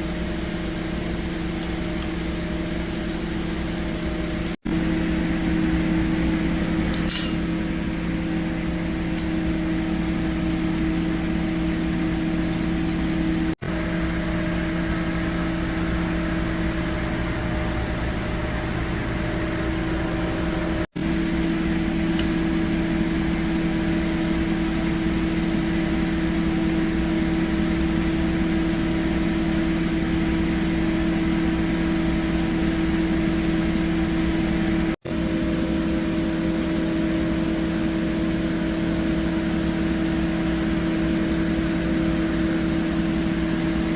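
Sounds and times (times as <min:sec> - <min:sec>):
fan motor humming: 0:00.0 - 0:13.6
light clink: 0:06.9 - 0:07.6.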